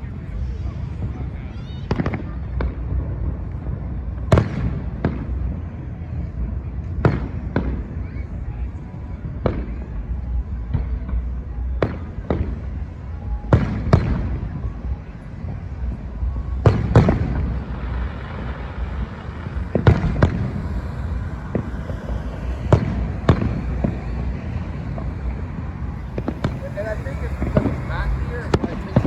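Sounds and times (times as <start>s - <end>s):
continuous low rumble: 0.0s - 29.0s
firework shells bursting: 26.0s - 29.0s.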